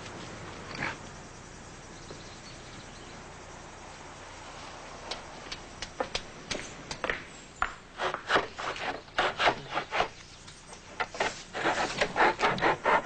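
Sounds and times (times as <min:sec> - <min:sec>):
hand tool rasping wood: 0:08.0 - 0:10.2, 0:11.0 - 0:13.0.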